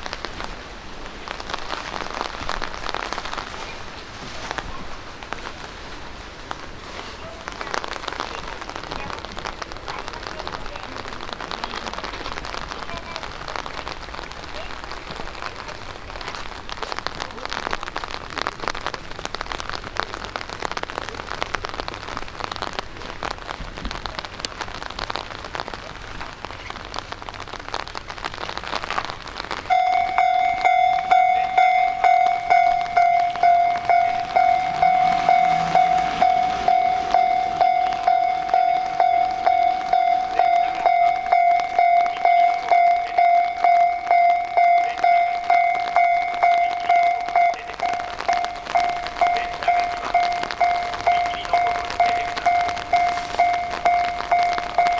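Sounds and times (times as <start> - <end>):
rain pattering on hard surface: 0.0 - 54.9
level crossing alarm ringing: 29.7 - 54.9.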